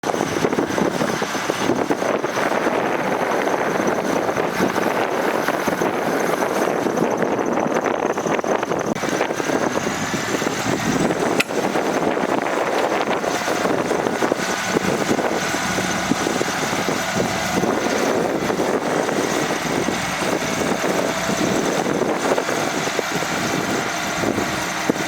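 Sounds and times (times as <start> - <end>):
heavy diesel machinery running: 0.0 - 25.0
sharp click: 11.4 - 11.6.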